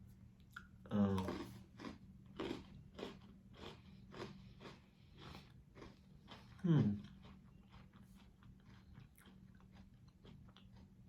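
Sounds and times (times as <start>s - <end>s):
chewing crunchy cookie: 0.4s - 11.0s.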